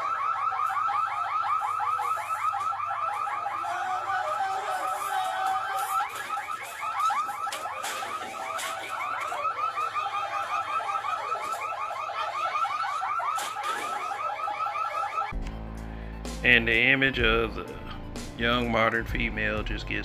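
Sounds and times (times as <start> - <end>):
electronic alarm chirping: 0.0 - 15.4.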